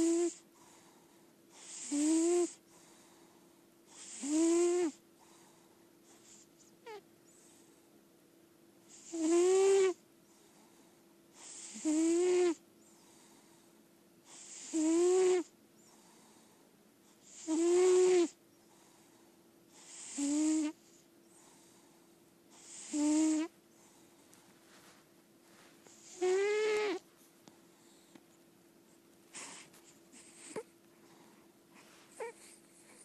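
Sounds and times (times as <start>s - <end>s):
cat snoring: 0.0s - 3.2s, 3.9s - 5.6s, 6.2s - 7.7s, 8.9s - 10.6s, 11.4s - 13.6s, 14.2s - 16.5s, 17.2s - 21.9s, 22.5s - 24.0s, 25.9s - 27.0s, 29.3s - 31.3s, 32.1s - 33.0s.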